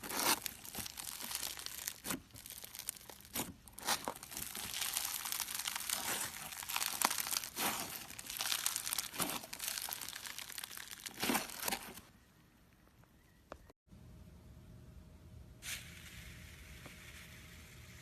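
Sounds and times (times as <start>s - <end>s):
slime crackling and snapping: 0.0s - 12.0s.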